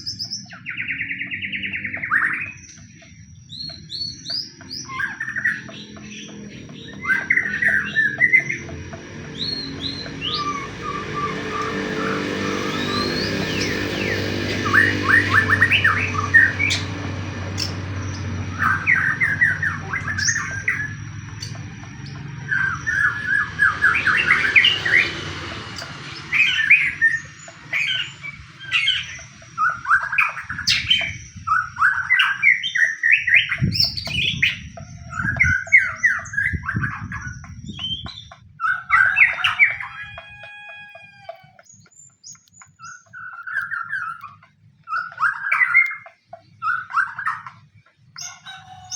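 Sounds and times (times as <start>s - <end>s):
songbird chattering and whistling: 0.0s - 40.6s, 41.6s - 48.9s
low hum: 4.4s - 32.2s.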